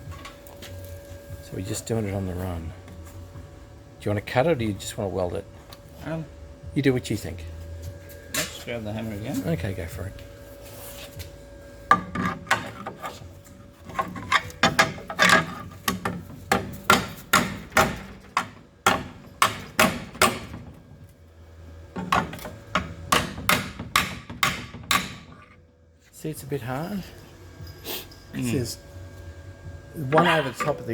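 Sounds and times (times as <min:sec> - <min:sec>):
hammer striking sheet steel: 0:16.5 - 0:20.6.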